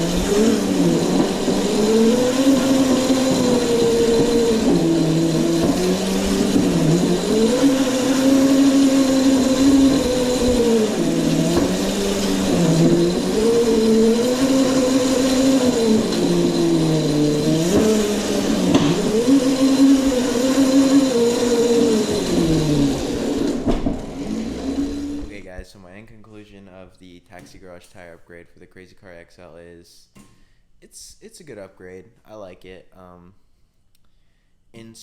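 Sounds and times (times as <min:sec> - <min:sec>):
electric motor whining: 0:00.0 - 0:25.4.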